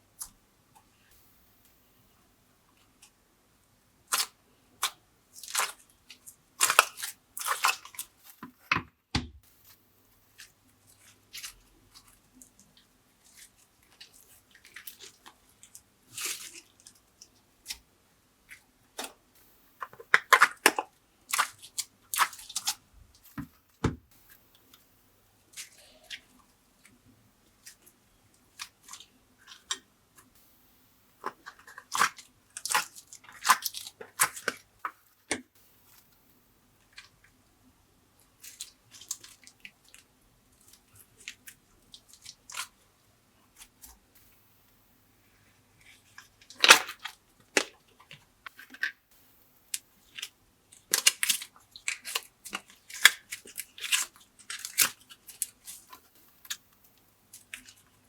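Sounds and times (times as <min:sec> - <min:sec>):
slime crackling and popping: 0:50.0 - 0:56.6.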